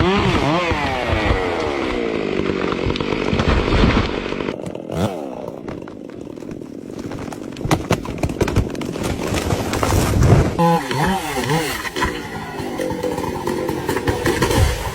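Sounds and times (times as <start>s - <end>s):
chainsaw engine revving: 0.0s - 6.7s, 9.7s - 14.9s.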